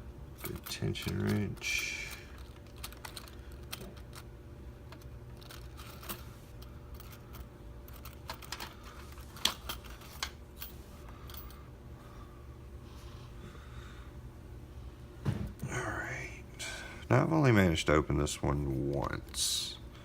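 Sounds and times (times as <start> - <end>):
low steady hum: 0.0 - 20.0
metal lockpicking tools clinking: 0.4 - 1.6, 2.3 - 4.3, 4.9 - 11.6.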